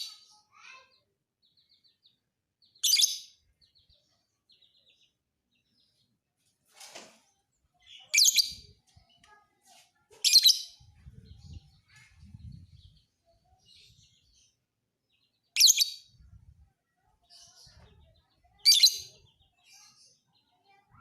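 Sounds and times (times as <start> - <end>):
bird shrill chirping: 8.0 - 8.7.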